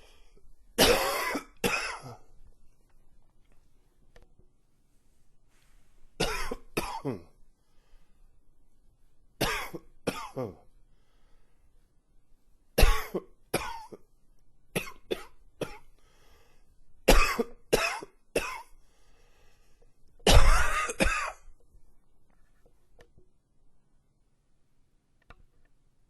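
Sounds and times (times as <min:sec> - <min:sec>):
man coughing: 0:00.8 - 0:02.3, 0:06.2 - 0:07.4, 0:09.4 - 0:10.7, 0:12.8 - 0:14.0, 0:17.1 - 0:18.7, 0:20.2 - 0:21.4.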